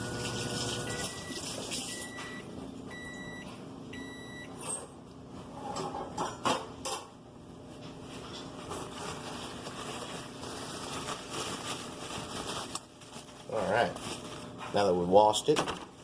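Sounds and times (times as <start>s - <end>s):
microwave oven beeping: 0.0s - 5.0s.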